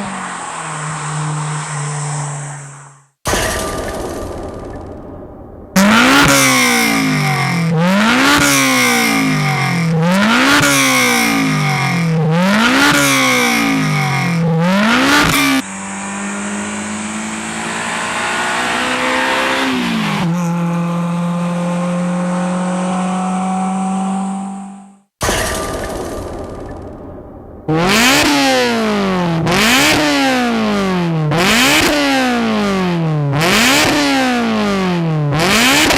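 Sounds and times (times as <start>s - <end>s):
car engine revving hard: 5.8s - 24.8s, 27.7s - 35.9s.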